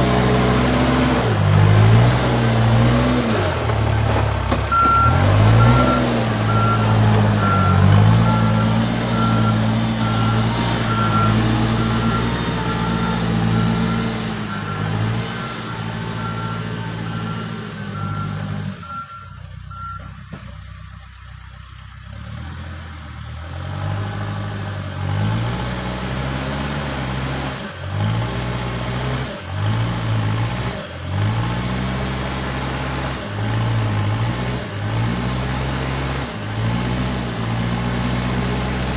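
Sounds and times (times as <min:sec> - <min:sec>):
diesel engine revving: 0:00.0 - 0:38.9
reversing alarm beeping: 0:04.7 - 0:20.2.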